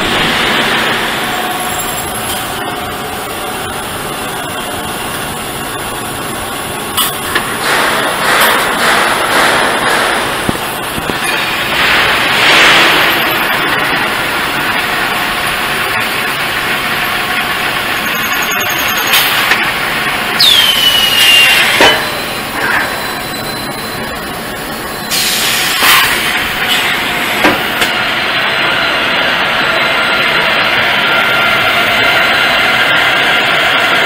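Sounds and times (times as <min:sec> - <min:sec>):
metal knocks and clanks: 0:07.0 - 0:11.4
drilling machine hiss and whir: 0:20.4 - 0:23.4, 0:25.0 - 0:27.9.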